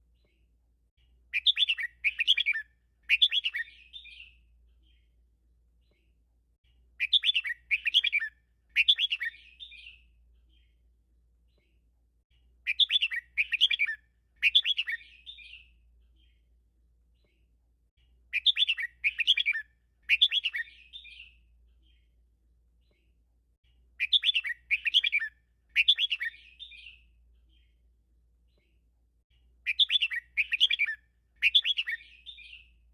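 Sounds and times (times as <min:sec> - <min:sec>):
bird singing: 0:01.3 - 0:05.2, 0:07.0 - 0:10.8, 0:12.6 - 0:16.5, 0:18.3 - 0:22.2, 0:24.0 - 0:27.9, 0:28.5 - 0:32.9.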